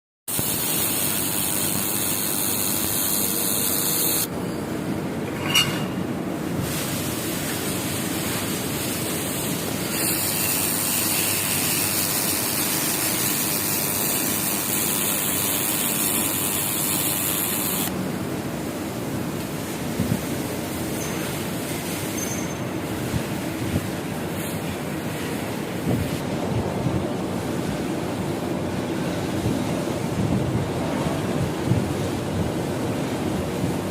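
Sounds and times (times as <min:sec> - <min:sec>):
laser welding machine hissing: 0:00.3 - 0:04.3, 0:06.6 - 0:17.9.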